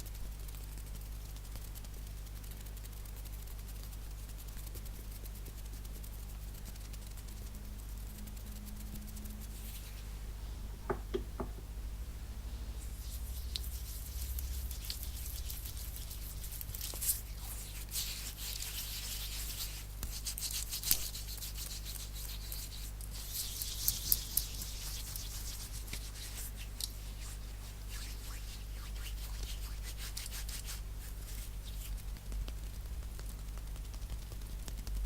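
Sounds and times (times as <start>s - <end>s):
hands rubbing together: 9.4s - 11.7s, 12.8s - 32.2s
sharp taps: 10.7s - 11.7s.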